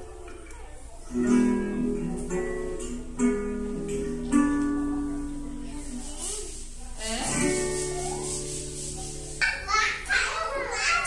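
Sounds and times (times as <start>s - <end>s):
acoustic guitar music: 0.0s - 11.0s.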